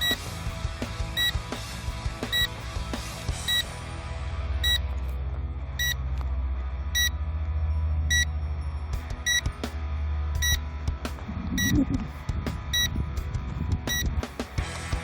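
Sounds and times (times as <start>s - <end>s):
low rumble: 3.5s - 14.2s
remote controller beeping: 11.5s - 12.0s.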